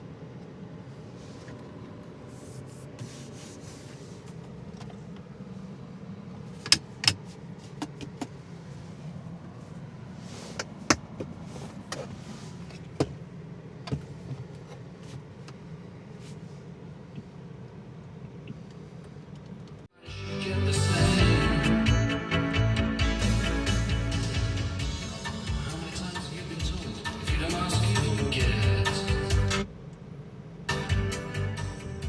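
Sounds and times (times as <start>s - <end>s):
steady low hum: 0.0s - 19.9s, 21.1s - 32.0s
car controls clicking and knocking: 6.6s - 8.4s, 10.6s - 15.7s, 17.1s - 19.8s.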